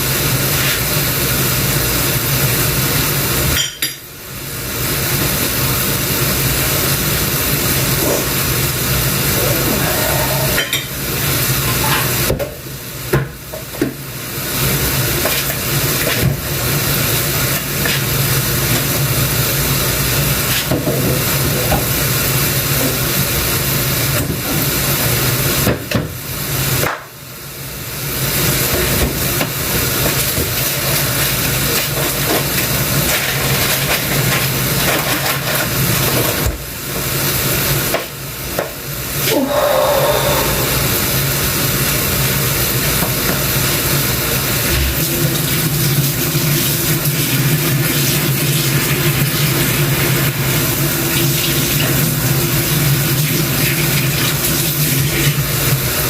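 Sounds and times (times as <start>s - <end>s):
loud steady hiss: 36.6s - 53.6s
low hum: 39.3s - 41.6s.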